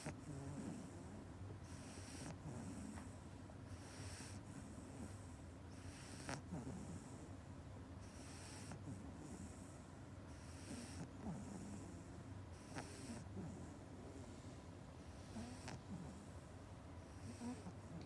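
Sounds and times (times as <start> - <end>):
puppy snoring: 0.0 - 18.0.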